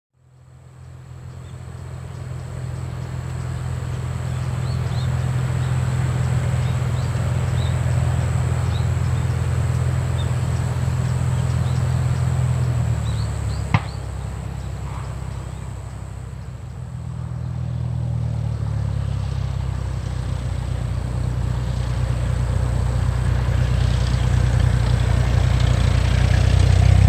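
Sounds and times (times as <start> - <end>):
propeller plane engine: 0.2 - 27.0
small birds chirping: 0.3 - 18.0.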